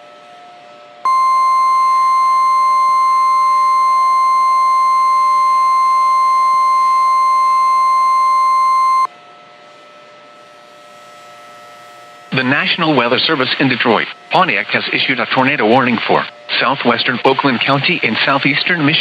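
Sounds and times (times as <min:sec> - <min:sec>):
high warning alarm tone: 0:01.1 - 0:09.1.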